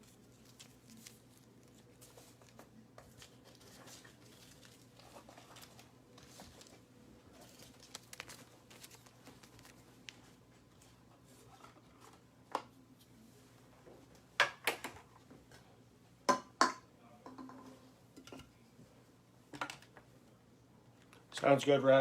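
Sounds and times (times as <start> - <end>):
cards and packaging rustling: 0.0 - 12.2.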